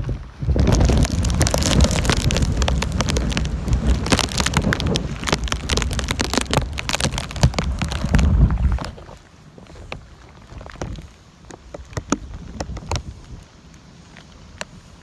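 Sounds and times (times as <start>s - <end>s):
heavy low rumble: 0.0s - 9.1s
wind gusting against microphone: 0.0s - 11.2s, 11.8s - 13.6s
rain spattering: 0.0s - 14.7s.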